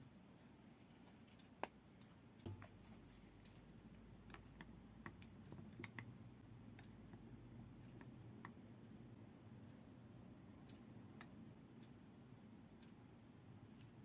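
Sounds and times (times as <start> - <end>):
small clicks and taps: 0.9 - 8.9, 10.6 - 12.0.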